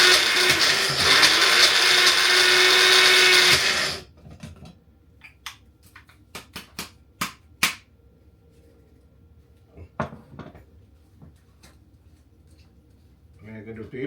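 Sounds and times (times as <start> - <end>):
electric blender running: 0.0 - 4.1.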